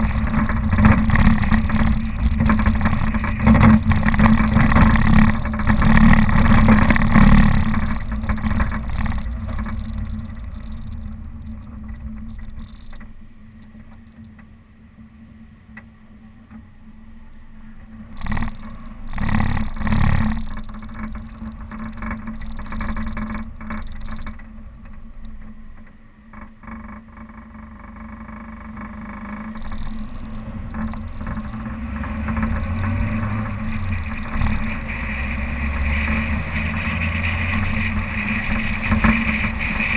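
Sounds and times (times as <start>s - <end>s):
off-road vehicle engine running: 0.0s - 39.9s.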